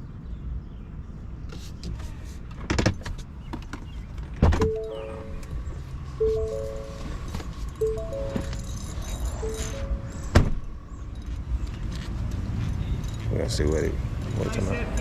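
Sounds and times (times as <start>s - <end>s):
low vehicle rumble: 3.3s - 14.4s
repeating tones: 4.6s - 10.4s.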